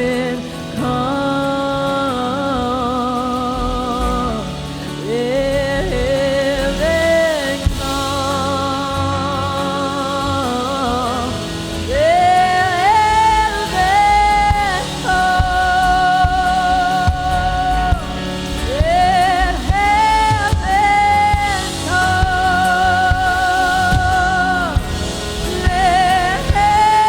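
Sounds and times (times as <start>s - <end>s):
person singing with vibrato: 0.0s - 27.0s
band with drums and bass: 6.8s - 27.0s.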